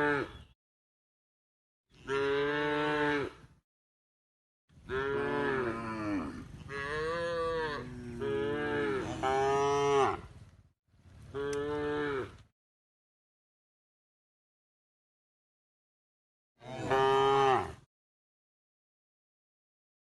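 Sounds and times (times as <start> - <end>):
cow mooing: 2.0 - 3.5, 4.9 - 10.3, 11.3 - 12.4, 16.6 - 17.8.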